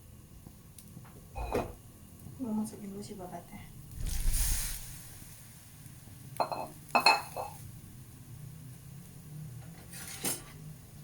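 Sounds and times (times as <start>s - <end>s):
low steady hum: 0.8s - 9.2s.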